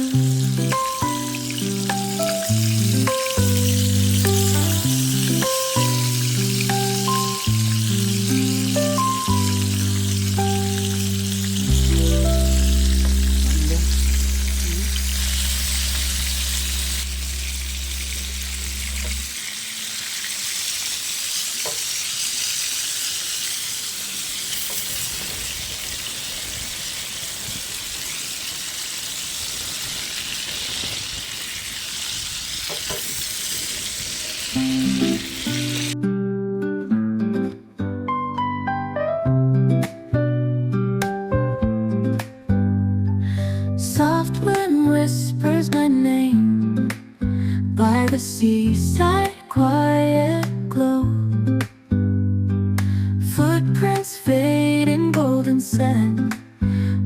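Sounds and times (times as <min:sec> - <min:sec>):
held background music notes: 0:00.0 - 0:19.1
plucked music: 0:00.0 - 0:19.3, 0:34.6 - 0:44.8
sizzling hiss: 0:00.0 - 0:36.0.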